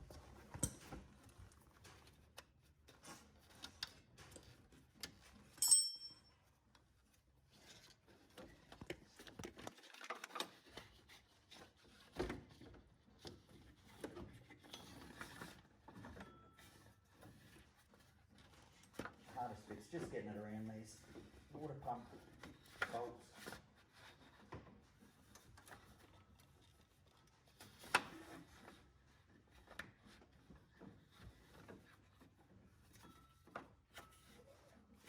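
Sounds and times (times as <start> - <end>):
sharp metallic clink: 5.6 - 6.3
soft clicks and scrapes: 7.1 - 20.2.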